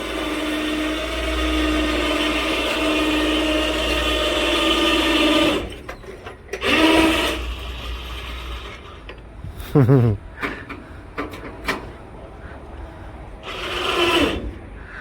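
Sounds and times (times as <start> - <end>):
electric winch motor whining: 0.0 - 9.2, 13.4 - 15.0.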